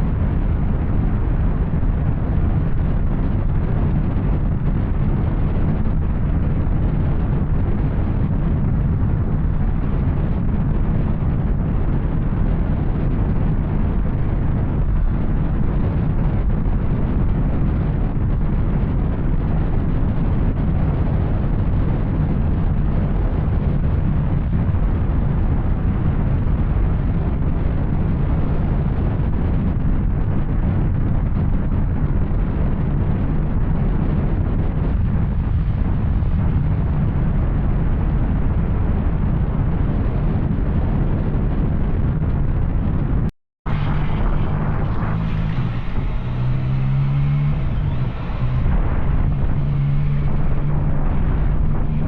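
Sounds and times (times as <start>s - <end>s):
rushing wind noise: 0.0s - 52.0s
motorcycle engine running: 43.7s - 52.0s.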